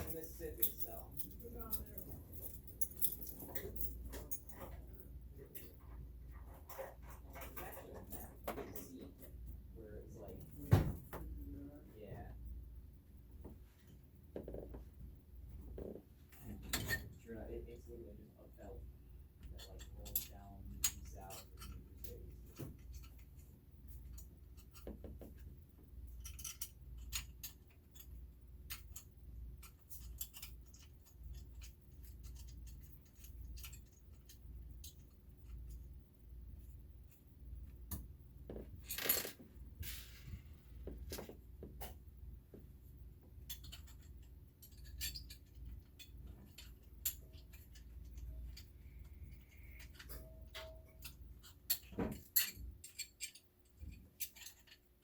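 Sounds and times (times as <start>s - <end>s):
steady low hum: 0.0s - 55.0s
parts clattering: 37.0s - 55.0s.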